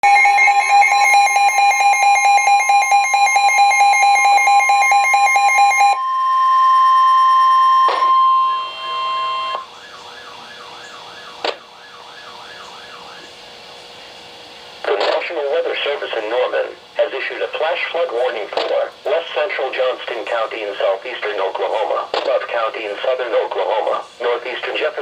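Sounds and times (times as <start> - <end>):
steady high alarm tone: 0.0 - 13.4.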